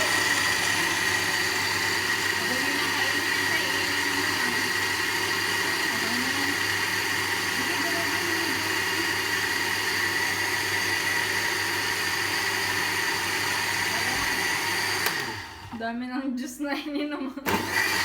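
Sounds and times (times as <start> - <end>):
blender motor whining: 0.0 - 15.8, 17.5 - 18.0.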